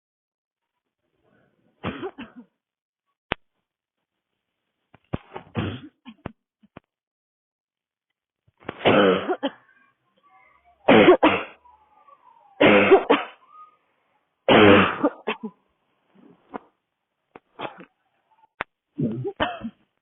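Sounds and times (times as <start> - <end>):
woman coughing: 1.8 - 2.6, 8.9 - 9.7, 10.9 - 11.6, 12.6 - 13.5, 14.5 - 15.6, 19.0 - 19.8.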